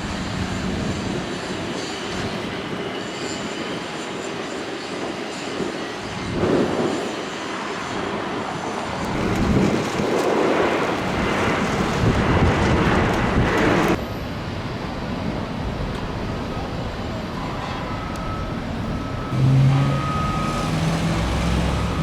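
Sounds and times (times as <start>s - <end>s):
passing vehicles rumbling: 17.7s - 22.0s.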